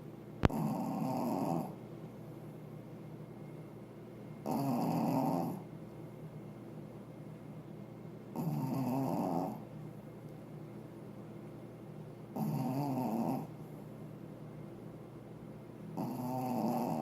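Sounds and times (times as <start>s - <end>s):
dog snoring: 0.4s - 1.8s, 4.4s - 5.7s, 8.3s - 9.7s, 12.3s - 13.6s, 15.9s - 17.0s.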